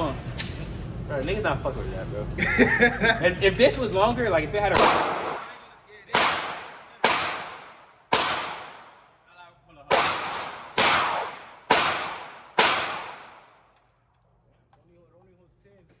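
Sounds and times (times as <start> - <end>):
gunshots with echo: 4.7 - 9.0, 9.9 - 13.5.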